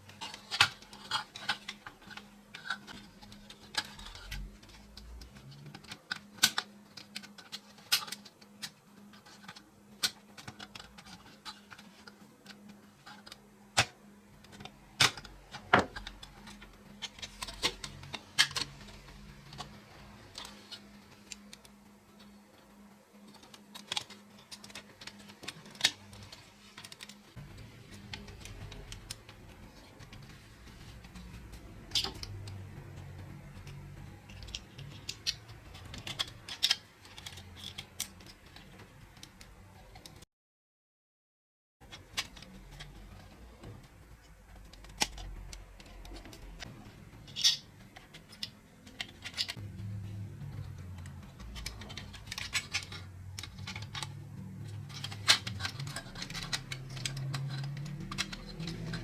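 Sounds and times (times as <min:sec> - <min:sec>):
clicks of small hard parts: 0:23.2 - 0:40.2, 0:41.8 - 0:59.0.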